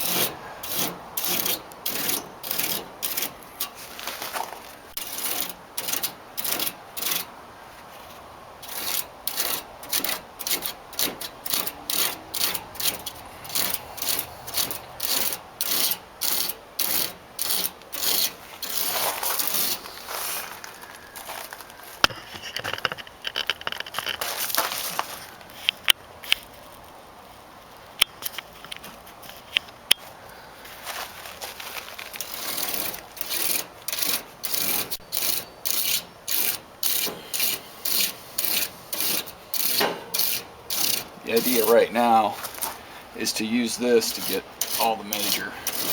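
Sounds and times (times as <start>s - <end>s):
comb scraping through metal fins: 0.0s - 20.7s, 31.7s - 45.9s.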